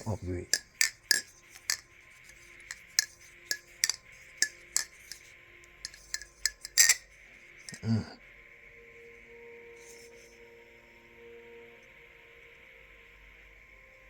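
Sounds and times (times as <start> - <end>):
butterfly knife metallic clicks: 2.7 - 5.2, 5.9 - 7.0.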